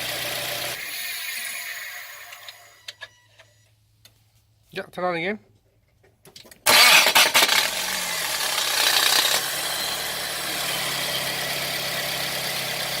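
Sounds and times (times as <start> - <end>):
car engine idling: 6.7 - 13.0.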